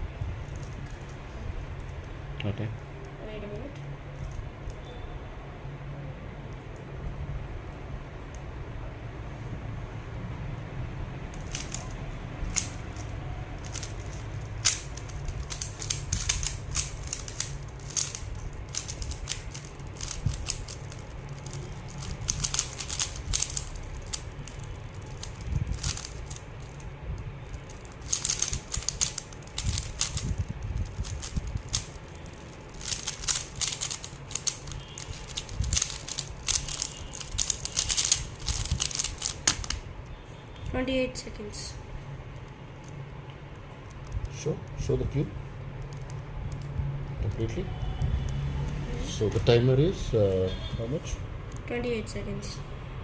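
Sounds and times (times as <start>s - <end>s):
puzzle cube plastic clicks: 11.3s - 39.8s.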